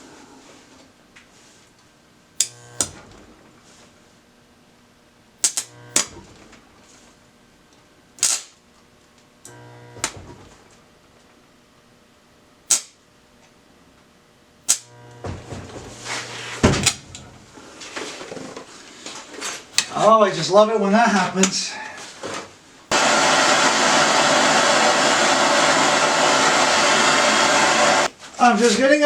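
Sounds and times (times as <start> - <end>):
low electrical hum: 0.0 - 23.0
crackling welding arc: 2.4 - 3.6, 5.4 - 7.2, 8.2 - 8.8, 9.4 - 10.8, 12.7 - 13.0, 14.6 - 17.6, 19.6 - 20.1
welding arc sharp snaps: 2.4 - 3.6, 5.4 - 7.2, 8.2 - 8.8, 9.4 - 10.8, 12.6 - 13.1, 14.6 - 17.5, 19.6 - 20.0.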